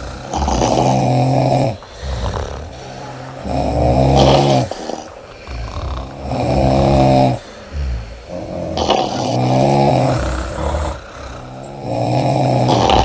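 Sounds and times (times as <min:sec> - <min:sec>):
soft breath: 0:00.0 - 0:13.0
woman snoring loudly: 0:00.0 - 0:13.0.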